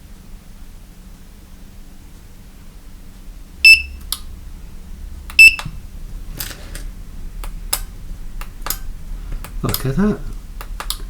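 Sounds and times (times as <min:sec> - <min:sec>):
high-pitched electronic beeps: 0:03.7 - 0:04.0
light switch clicks: 0:03.8 - 0:04.3, 0:07.4 - 0:11.0.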